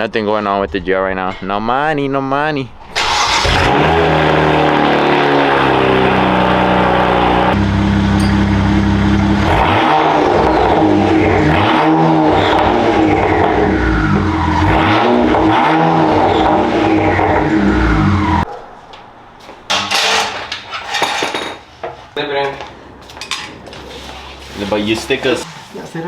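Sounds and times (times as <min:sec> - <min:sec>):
car engine revving: 0:02.8 - 0:18.5.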